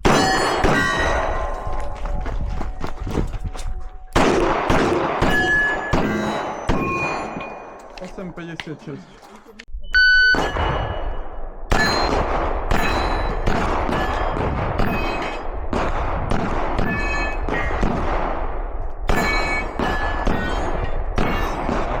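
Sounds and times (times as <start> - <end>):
steel plate ringing: 0.0 - 1.9, 5.2 - 7.8, 10.2 - 15.4, 16.8 - 17.6, 19.1 - 21.5
pistol shots: 4.2 - 7.9, 10.3 - 22.0.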